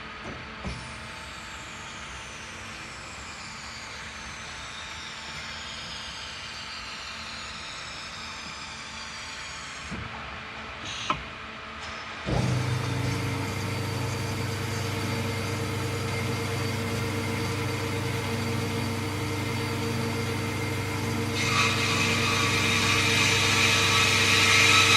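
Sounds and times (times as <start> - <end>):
band saw mechanical hum: 12.3 - 24.9.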